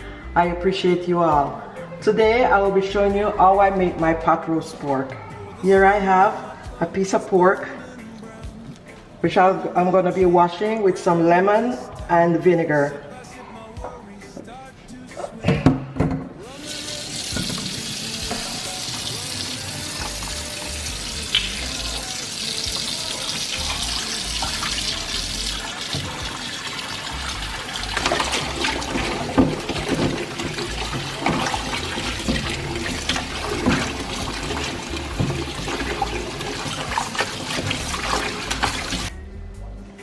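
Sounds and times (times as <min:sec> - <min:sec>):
tap water running into sink: 0:16.5 - 0:39.1
meat splashing and slapping: 0:21.1 - 0:39.1.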